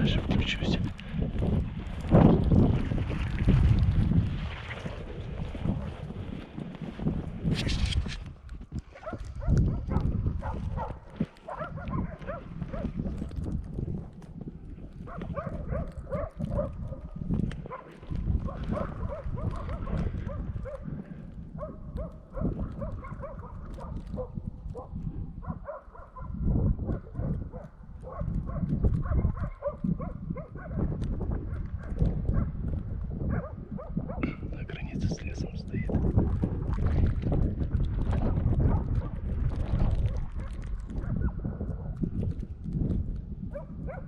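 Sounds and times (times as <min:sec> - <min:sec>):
wind rumble on microphone: 0:00.0 - 0:44.0
dogs barking rapidly: 0:08.9 - 0:13.2, 0:15.0 - 0:20.9, 0:21.6 - 0:30.9, 0:33.3 - 0:34.4, 0:43.5 - 0:44.0.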